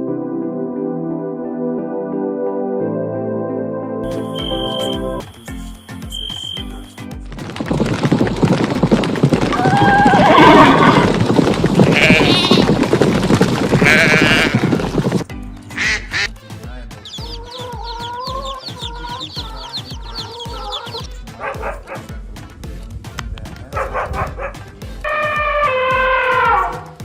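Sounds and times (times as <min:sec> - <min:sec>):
background music with low beat: 0:04.0 - 0:07.4, 0:15.2 - 0:27.0
animal calls: 0:09.5 - 0:11.2, 0:17.0 - 0:22.1, 0:23.8 - 0:26.9.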